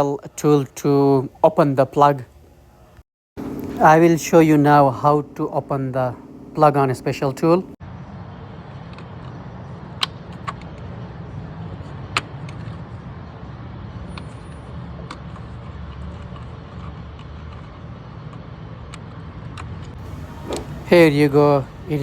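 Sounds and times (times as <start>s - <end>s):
steady low rumble: 3.4s - 7.8s.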